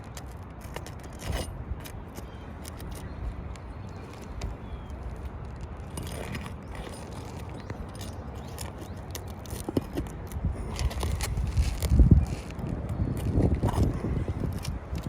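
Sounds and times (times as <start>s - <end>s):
steady low rumble: 0.0s - 15.0s
hand tools on roof shingles: 0.6s - 3.0s, 4.1s - 12.5s.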